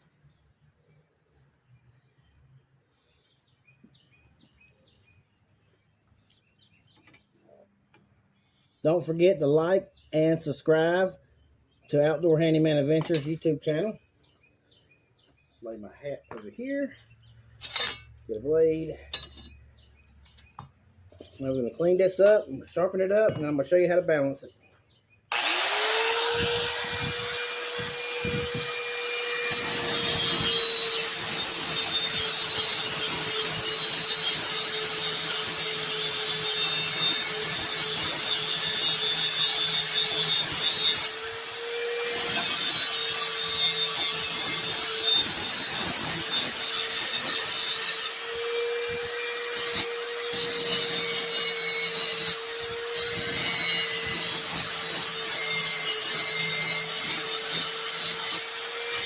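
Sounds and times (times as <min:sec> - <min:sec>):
metal scraping rasp: 0:17.4 - 0:20.5, 0:25.4 - 0:59.0
electric grinder motor whine: 0:25.3 - 0:59.0.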